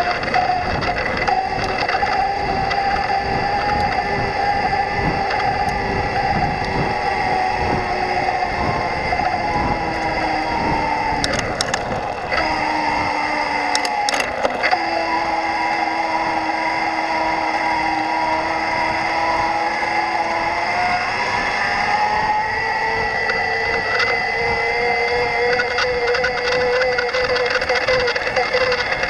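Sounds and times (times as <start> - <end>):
electric bike motor whine: 0.0 - 29.0
scratchy chirping ticks: 0.0 - 29.0.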